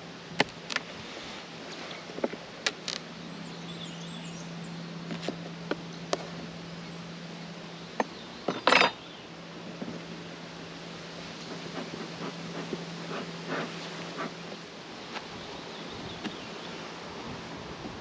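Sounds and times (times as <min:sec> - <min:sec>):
scraping rustle: 0:11.3 - 0:15.3.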